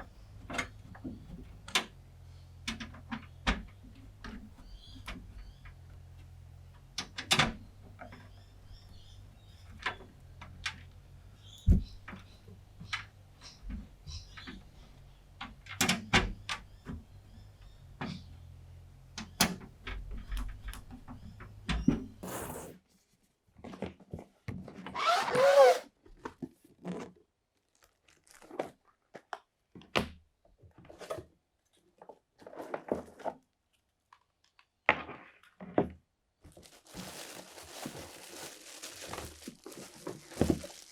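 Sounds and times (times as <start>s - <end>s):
squeaky scrape: 25.0s - 25.9s.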